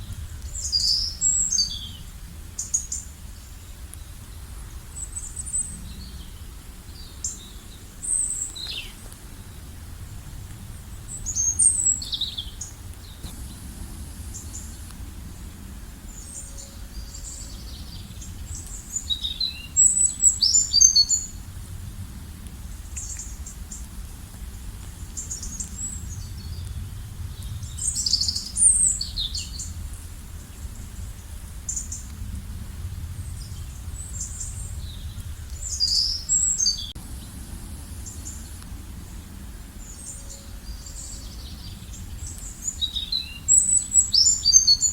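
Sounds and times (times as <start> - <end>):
songbirds chirping and trilling: 0.0 - 21.5, 33.1 - 44.9
low outdoor background rumble: 0.0 - 44.9.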